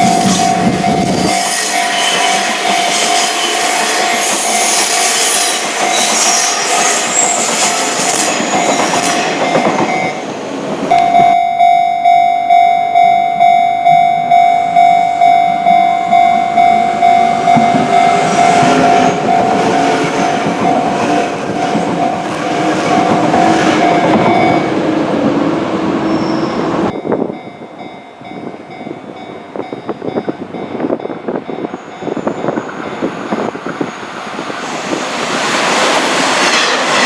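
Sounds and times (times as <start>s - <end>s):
level crossing bell ringing: 0.0s - 2.0s, 10.9s - 22.3s, 23.0s - 24.8s
electric train passing: 0.0s - 37.0s.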